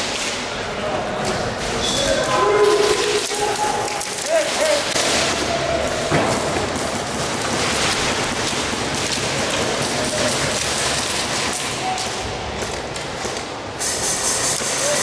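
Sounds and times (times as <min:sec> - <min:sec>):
airsoft fire clatter: 0:04.1 - 0:15.0.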